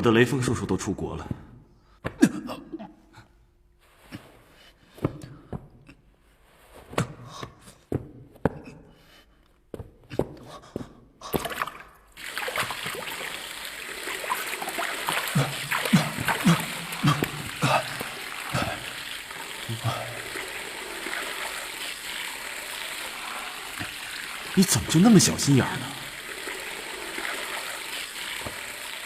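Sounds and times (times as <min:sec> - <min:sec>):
tap water running: 0:11.5 - 0:29.0.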